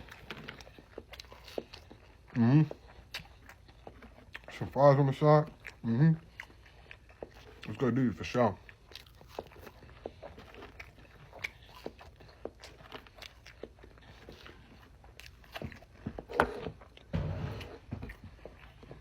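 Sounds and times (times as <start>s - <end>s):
person chewing crunchy food: 0.0s - 19.0s.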